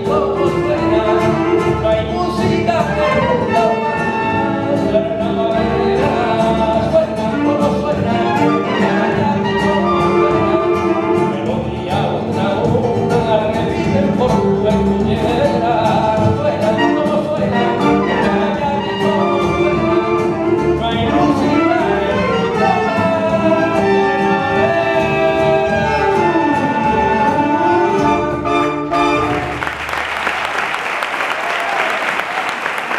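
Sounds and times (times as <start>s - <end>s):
group singing rumba in chorus: 0.0s - 28.5s
band accompaniment: 0.0s - 32.9s
applause: 29.2s - 32.9s.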